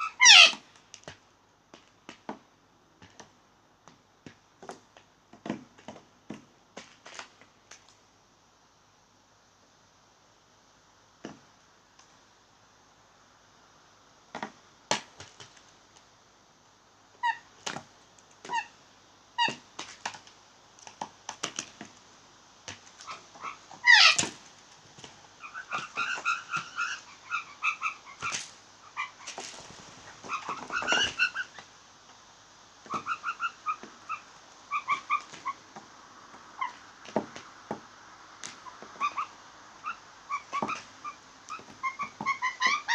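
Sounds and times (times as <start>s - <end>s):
blue jay harsh calls: 0.0s - 0.7s, 17.2s - 17.6s, 23.0s - 24.3s, 25.4s - 29.4s, 30.2s - 31.6s, 32.9s - 35.6s, 38.6s - 42.9s
falling bird call: 0.0s - 0.7s, 23.0s - 24.4s.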